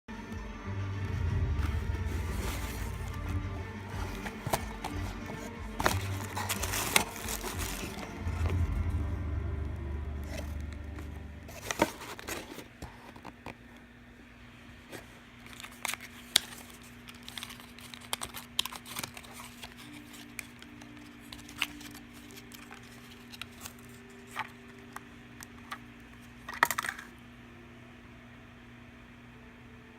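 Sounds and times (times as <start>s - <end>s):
music: 0.1s - 12.5s, 18.7s - 29.9s
faint steady hum: 0.1s - 29.9s
packaging being opened: 1.6s - 9.0s, 10.2s - 13.7s, 14.9s - 27.1s
box and paper crinkling: 1.6s - 9.1s, 10.2s - 13.7s, 14.8s - 27.1s.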